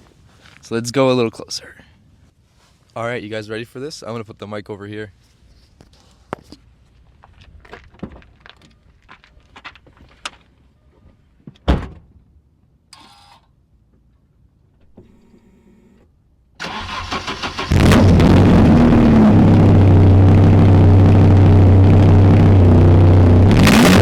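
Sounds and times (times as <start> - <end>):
car engine cranking: 16.6 - 24.0.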